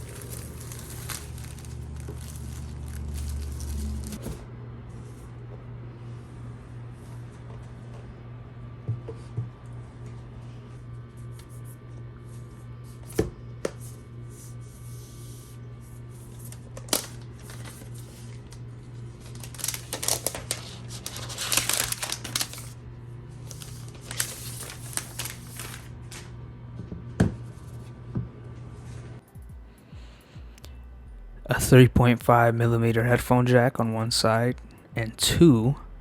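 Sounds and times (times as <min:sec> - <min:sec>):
packaging tearing and crinkling: 0:00.0 - 0:04.2, 0:16.5 - 0:18.6, 0:19.2 - 0:22.8, 0:23.5 - 0:26.3
steady low hum: 0:00.0 - 0:36.0.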